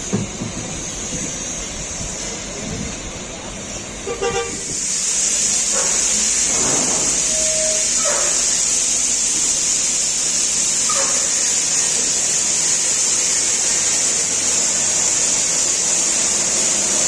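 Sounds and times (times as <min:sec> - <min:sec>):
loud high hiss: 0:00.0 - 0:17.0
vehicle horn toot: 0:04.0 - 0:04.7.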